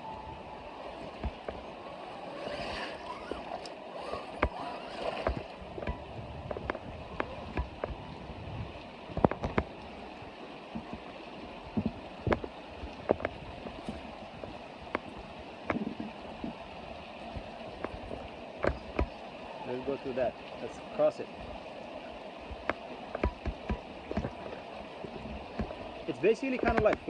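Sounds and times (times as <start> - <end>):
creek water running: 0.0 - 27.0
sharp clicks and knocks: 3.6 - 8.0, 9.2 - 9.7, 22.5 - 24.6, 26.5 - 27.0.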